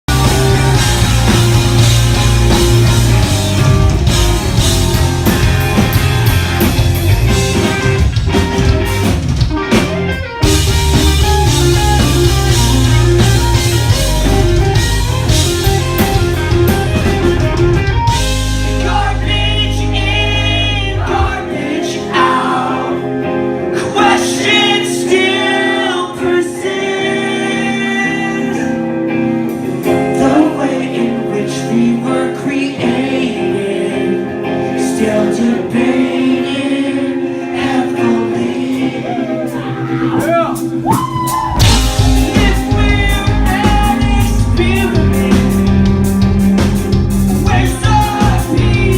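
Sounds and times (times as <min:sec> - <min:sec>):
heavy bass line: 0:00.0 - 0:22.4, 0:40.2 - 0:48.9
electric guitars: 0:00.1 - 0:48.9
person singing: 0:18.6 - 0:46.7, 0:47.3 - 0:48.9.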